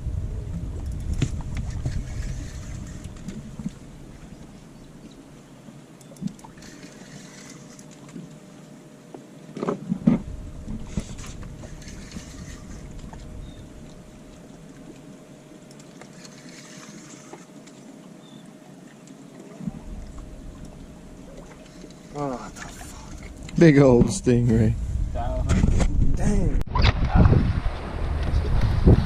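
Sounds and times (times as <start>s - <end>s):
faint steady hum: 0.0s - 29.0s
water lapping against boat hull: 0.6s - 5.4s, 6.1s - 24.2s.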